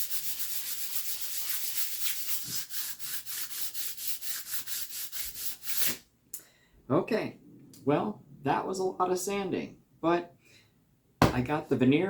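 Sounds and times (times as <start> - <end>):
sandpaper rubbing on wood: 0.0 - 6.0.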